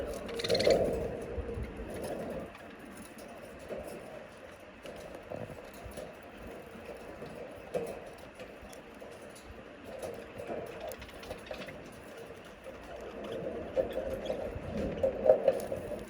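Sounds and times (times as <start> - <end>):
budgerigars chattering: 0.0 - 1.0.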